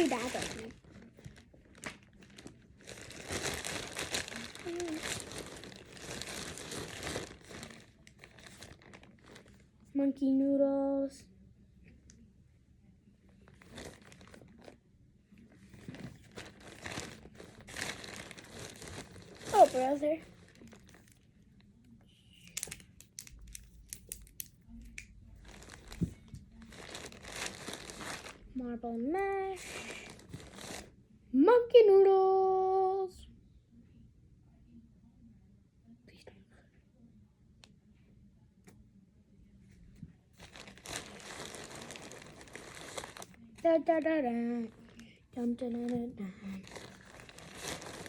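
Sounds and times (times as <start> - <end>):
plastic packaging crinkling: 0.0 - 9.6, 13.5 - 14.8, 15.8 - 21.2, 22.5 - 28.5, 29.4 - 30.9, 40.4 - 48.0.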